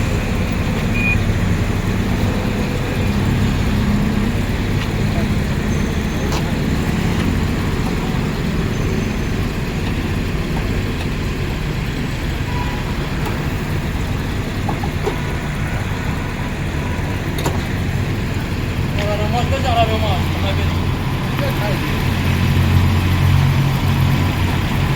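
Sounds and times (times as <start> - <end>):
road and traffic noise: 0.0 - 24.9
vehicle engine running: 0.0 - 24.9.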